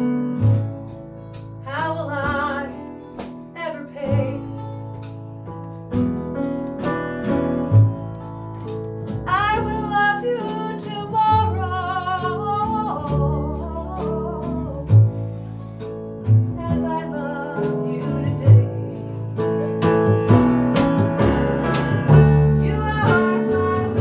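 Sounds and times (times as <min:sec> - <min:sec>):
acoustic guitar strumming: 0:00.0 - 0:24.0
low bass notes: 0:00.0 - 0:24.0
person singing with vibrato: 0:16.6 - 0:19.5, 0:21.4 - 0:24.0.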